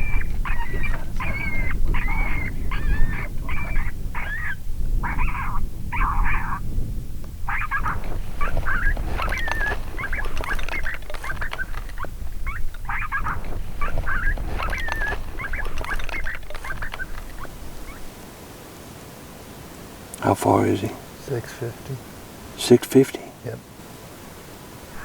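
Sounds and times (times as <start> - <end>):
electronic squeaky chirps and squeals: 7.5 - 18.1.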